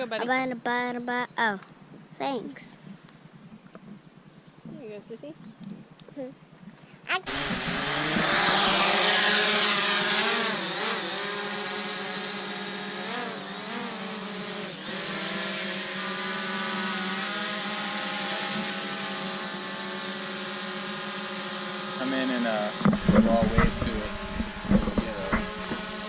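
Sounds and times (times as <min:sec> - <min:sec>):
drone propellers whining: 0:07.2 - 0:26.0.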